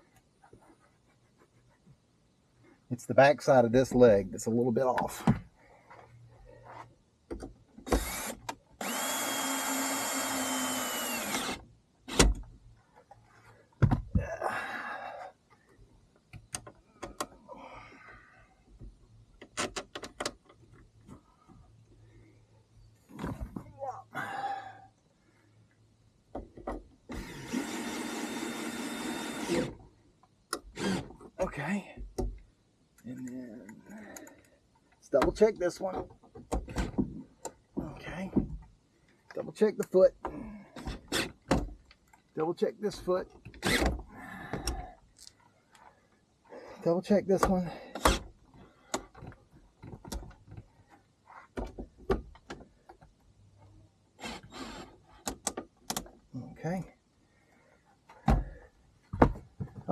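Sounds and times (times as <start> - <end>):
power tool motor running: 8.0 - 11.6, 27.2 - 29.7.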